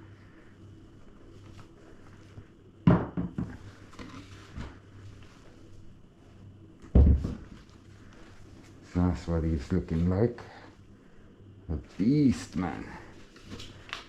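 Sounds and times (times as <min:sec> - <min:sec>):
faint steady hum: 0:00.0 - 0:14.0
crossbow knocking on hard surface: 0:02.9 - 0:03.6.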